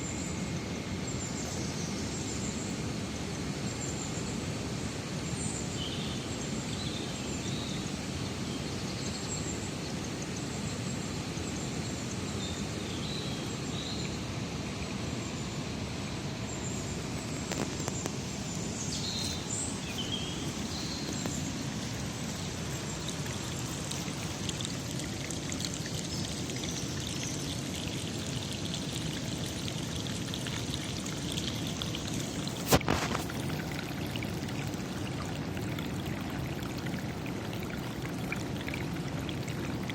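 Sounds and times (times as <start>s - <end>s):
flowing water: 0.0s - 39.9s
small birds chirping: 17.5s - 28.6s.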